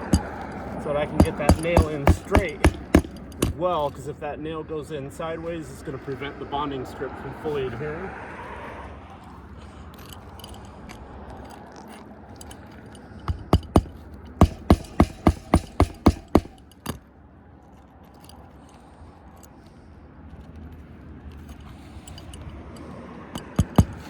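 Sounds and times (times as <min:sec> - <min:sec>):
hammer striking nails: 0:00.0 - 0:03.7, 0:13.2 - 0:17.0, 0:23.4 - 0:24.0
shingles rustling and clicking: 0:00.0 - 0:04.1, 0:09.0 - 0:17.1, 0:17.7 - 0:24.0.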